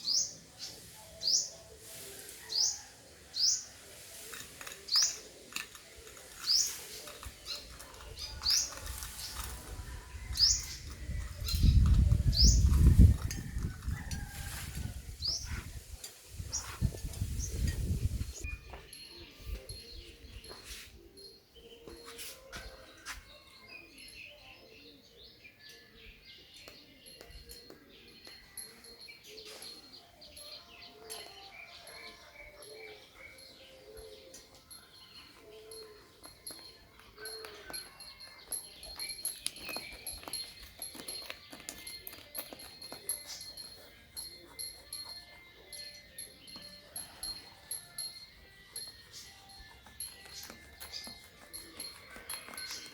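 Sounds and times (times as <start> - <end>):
birds chirping: 0.0 - 52.9.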